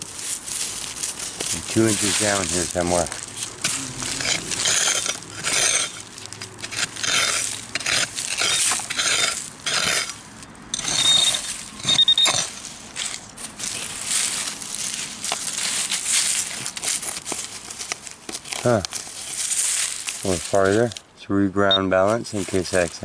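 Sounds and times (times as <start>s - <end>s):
stones clinking: 0.0s - 20.4s
digging tool scraping gravel: 0.0s - 21.0s, 21.7s - 23.0s
metal detector beeps: 10.8s - 12.5s, 21.7s - 22.0s.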